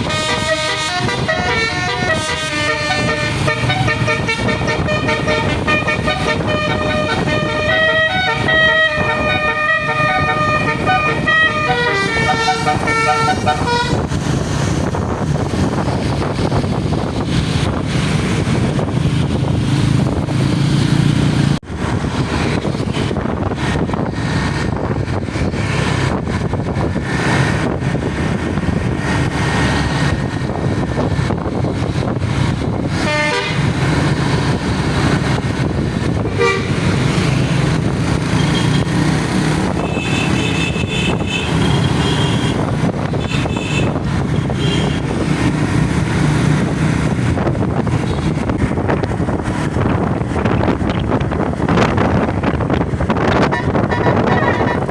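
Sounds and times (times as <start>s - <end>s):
multi-note bus horn: 0.0s - 14.0s, 32.9s - 33.8s, 36.4s - 37.0s, 39.7s - 45.0s, 53.4s - 54.9s
engines rumbling: 0.0s - 54.9s
passing traffic: 0.0s - 54.9s.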